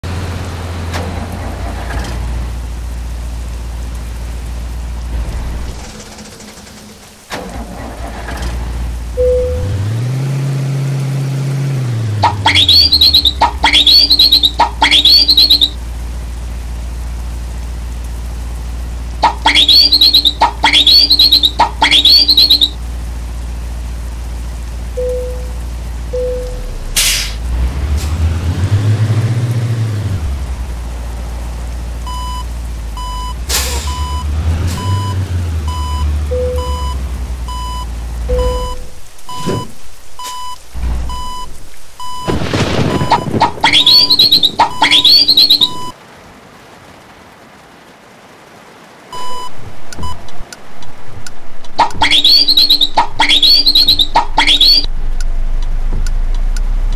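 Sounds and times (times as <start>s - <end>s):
engine drone: 0.0s - 46.0s, 51.7s - 56.9s
reversing alarm beeping: 9.2s - 9.8s, 12.2s - 15.8s, 19.2s - 22.8s, 25.0s - 26.7s, 33.0s - 46.0s, 51.8s - 54.9s
electronic whistle horn warbling: 12.2s - 15.8s, 19.2s - 22.8s, 38.3s - 39.7s, 42.8s - 45.9s, 51.8s - 54.9s
short lower tones: 12.2s - 15.8s, 19.2s - 22.8s, 25.0s - 25.6s, 38.3s - 40.4s, 51.8s - 55.3s
loud sharp hiss: 27.0s - 27.4s
low hum: 34.8s - 45.9s, 51.6s - 56.9s.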